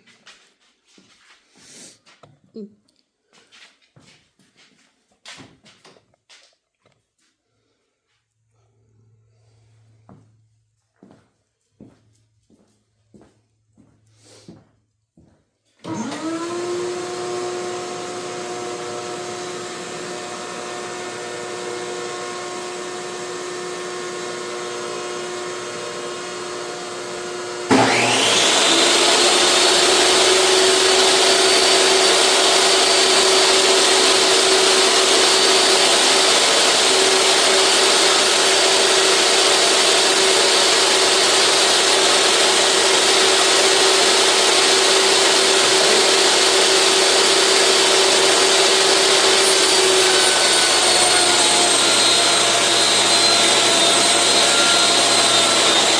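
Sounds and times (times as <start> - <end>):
loud motor with high whine: 15.9 - 55.9
table saw motor running: 15.9 - 55.9.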